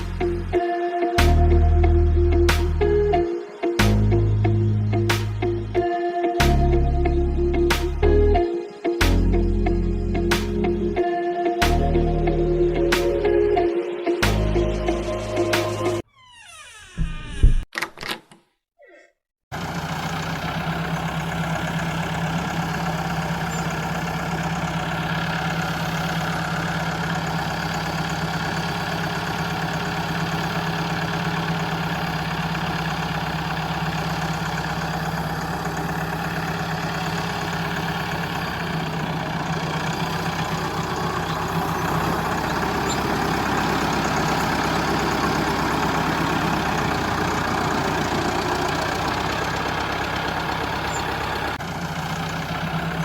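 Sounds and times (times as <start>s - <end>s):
tractor engine idling: 19.5s - 53.0s.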